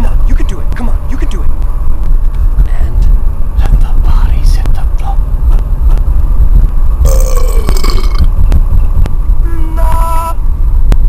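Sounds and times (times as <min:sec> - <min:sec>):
heavy low rumble: 0:00.0 - 0:11.0
burp-like sound: 0:07.0 - 0:08.3.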